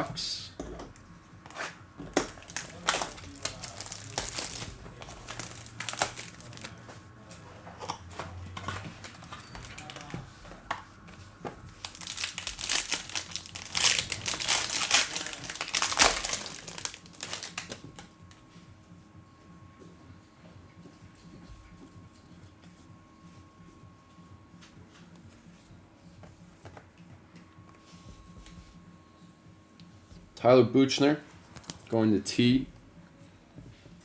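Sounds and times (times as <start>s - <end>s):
wrapping crinkling and tearing: 2.1s - 6.9s, 8.7s - 10.4s, 11.7s - 18.1s.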